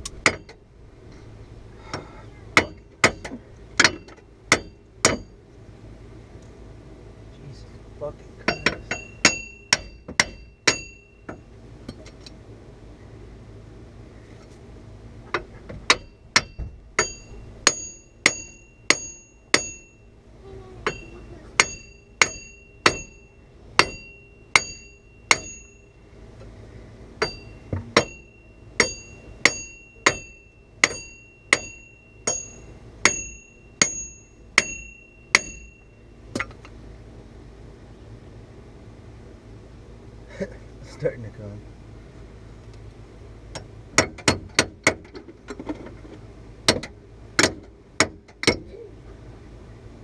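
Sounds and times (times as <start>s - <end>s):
hammer striking metal studs: 0.2s - 0.6s, 2.6s - 5.3s, 8.5s - 11.4s, 15.3s - 19.8s, 20.8s - 23.2s, 23.8s - 25.8s, 27.2s - 35.7s, 44.0s - 45.2s, 46.7s - 48.6s.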